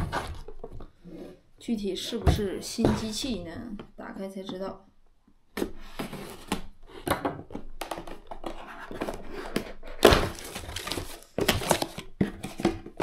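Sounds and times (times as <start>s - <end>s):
cardboard box being opened: 8.5s - 12.8s
packaging crinkling: 10.0s - 12.6s.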